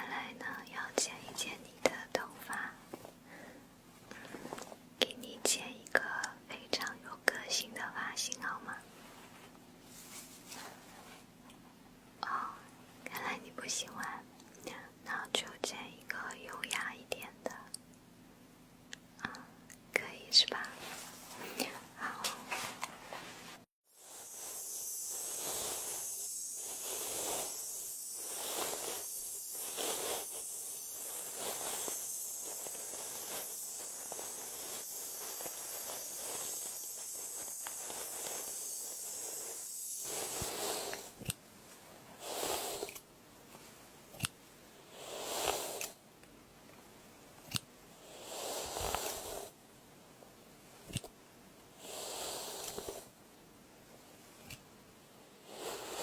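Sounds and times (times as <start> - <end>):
steady high hiss: 0.0 - 56.0
scissors snipping hair: 41.2 - 41.4, 44.1 - 44.4, 47.4 - 47.7, 50.9 - 51.1, 54.4 - 54.6.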